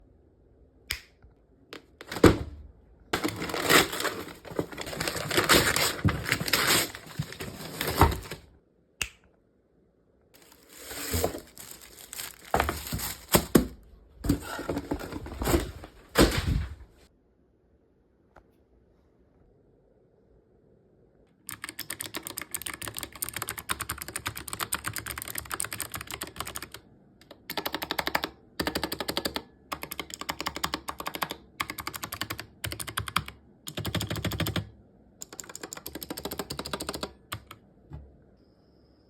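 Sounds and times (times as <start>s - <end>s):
keyboard typing clatter: 21.5s - 37.6s.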